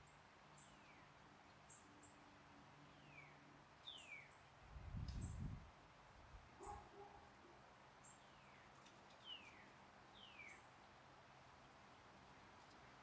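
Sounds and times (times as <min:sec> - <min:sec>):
wind rumble on microphone: 0:04.7 - 0:05.7.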